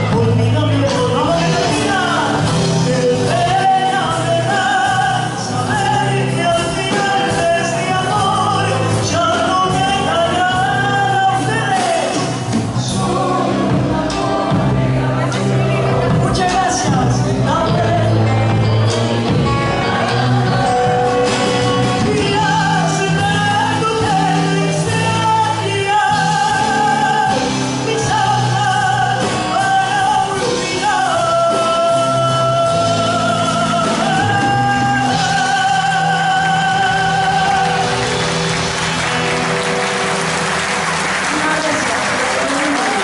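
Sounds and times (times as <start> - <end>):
person singing folk song: 0.0 - 39.6
instrumental accompaniment: 0.0 - 43.0
audience applause: 36.1 - 43.0.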